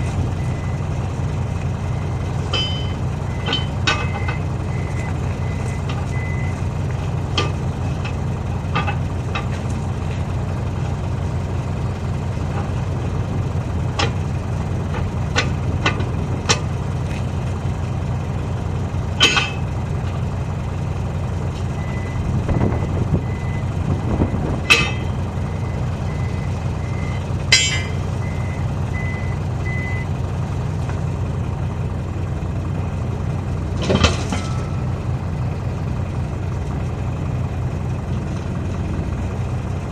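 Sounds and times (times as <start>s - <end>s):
heavy diesel engine idling: 0.0s - 39.9s
reversing alarm beeping: 0.4s - 0.8s, 1.8s - 6.6s, 21.8s - 30.1s
metallic clanks and knocks: 2.4s - 4.5s, 7.3s - 9.7s, 19.2s - 19.7s, 24.6s - 25.2s, 27.5s - 28.1s, 33.8s - 34.9s.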